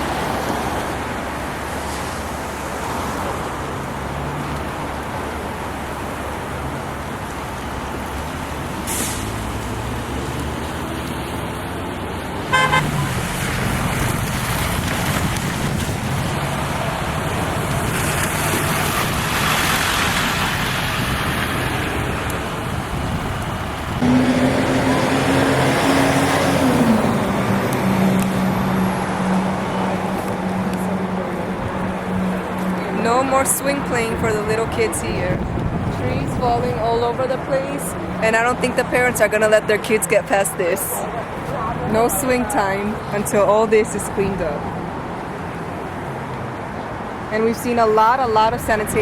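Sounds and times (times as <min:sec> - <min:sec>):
car engines passing: 0:00.0 - 0:49.0
short horn toot: 0:12.5 - 0:12.9.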